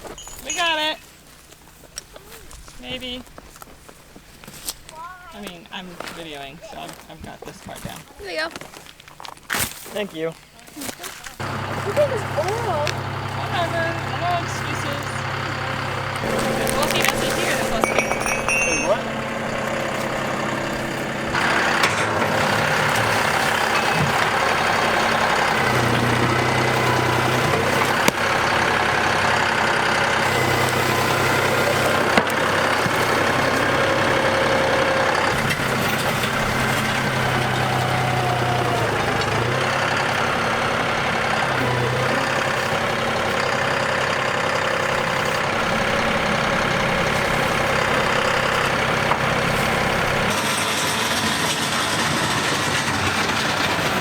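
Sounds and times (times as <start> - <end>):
vehicle engine running: 11.0 - 54.0.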